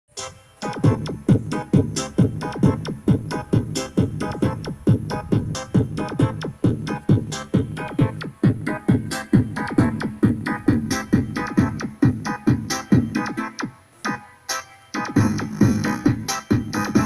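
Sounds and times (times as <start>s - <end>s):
electronic dance music: 0.1s - 17.0s
synth chords: 0.1s - 17.0s
kick drum: 0.8s - 13.2s.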